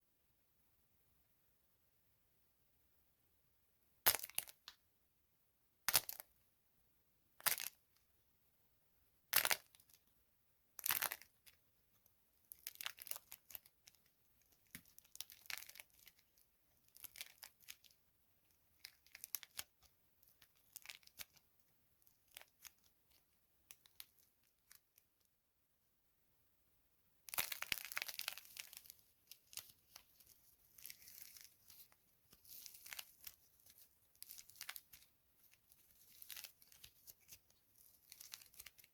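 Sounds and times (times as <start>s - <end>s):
dry soap crunching and crumbling: 10.8s - 11.5s, 12.5s - 18.0s, 18.8s - 21.4s, 27.3s - 38.9s.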